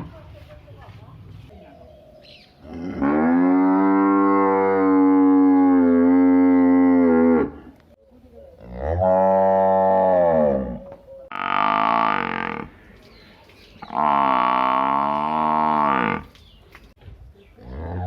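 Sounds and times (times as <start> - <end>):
cow mooing: 2.7 - 7.6, 8.6 - 12.7, 13.9 - 16.3.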